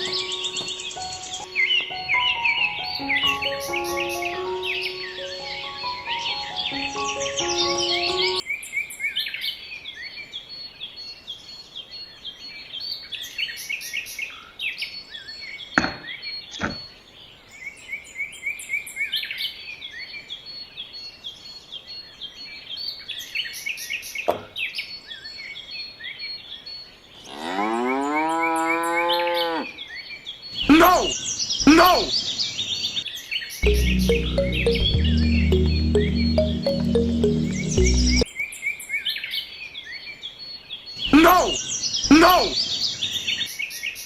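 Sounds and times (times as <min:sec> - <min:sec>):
music: 0:00.0 - 0:08.4, 0:33.6 - 0:38.2
small birds chirping: 0:00.0 - 0:09.0, 0:41.0 - 0:44.0.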